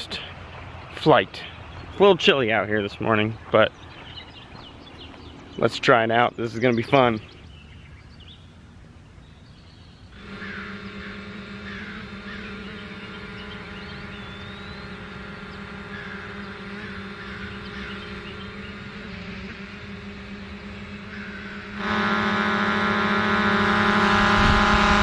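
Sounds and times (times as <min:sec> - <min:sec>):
birds chirping: 0:00.0 - 0:25.0
steady low hum: 0:00.0 - 0:25.0
drone propellers whining: 0:10.0 - 0:25.0.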